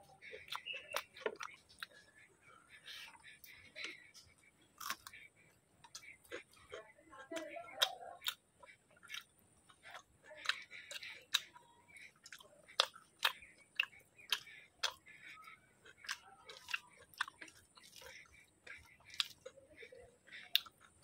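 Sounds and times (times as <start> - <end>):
person chewing food: 0.0 - 21.0.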